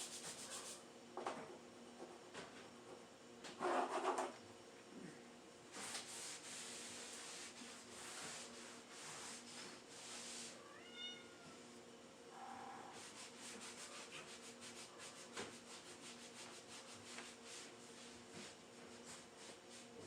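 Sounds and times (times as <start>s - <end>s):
cat meowing: 10.6s - 11.6s.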